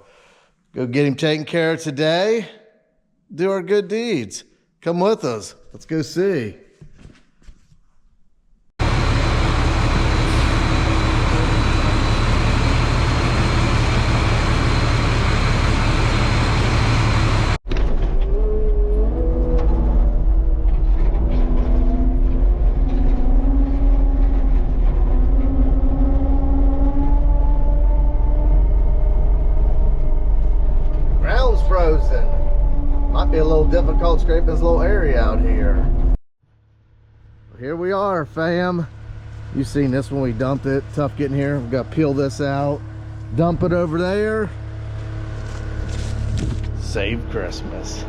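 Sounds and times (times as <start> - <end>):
truck engine and road noise: 8.8 - 17.6, 37.0 - 48.0
truck engine revving through gears: 8.8 - 17.6.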